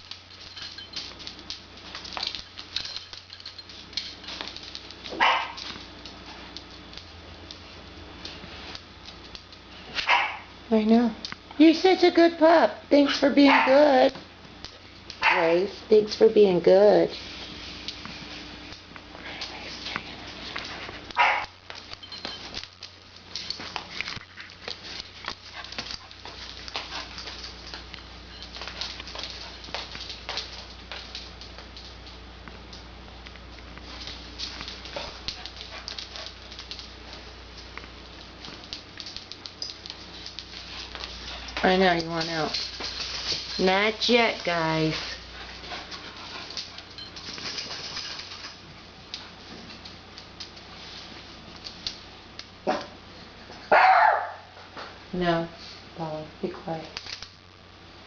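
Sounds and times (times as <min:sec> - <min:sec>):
light ticking and pattering: 0:00.0 - 0:09.8, 0:17.8 - 0:50.7
dogs moving about: 0:00.0 - 0:10.4, 0:17.4 - 0:55.0
dog barking: 0:05.2 - 0:05.6, 0:10.0 - 0:10.5, 0:13.5 - 0:13.8, 0:15.2 - 0:15.6, 0:21.2 - 0:21.5, 0:52.7 - 0:53.0, 0:53.7 - 0:54.5.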